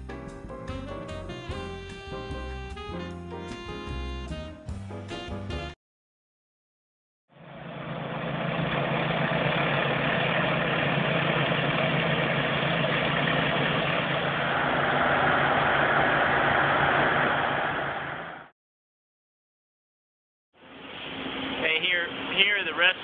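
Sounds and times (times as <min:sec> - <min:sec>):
pressure washer engine hum: 0:07.4 - 0:18.4, 0:20.6 - 0:23.0.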